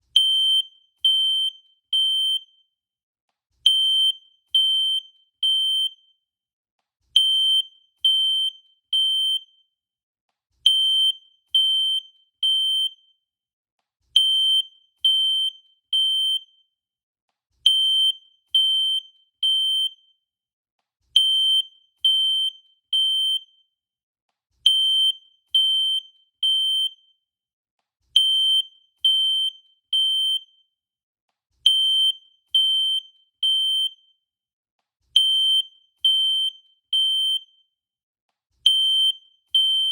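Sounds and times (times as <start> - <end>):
fire alarm high-pitched beeps: 0.2 - 2.7, 3.7 - 6.2, 7.2 - 9.6, 10.7 - 13.1, 14.2 - 16.7, 17.7 - 20.2, 21.2 - 23.7, 24.7 - 27.2, 28.2 - 30.8, 31.7 - 34.2, 35.2 - 37.8, 38.7 - 39.9.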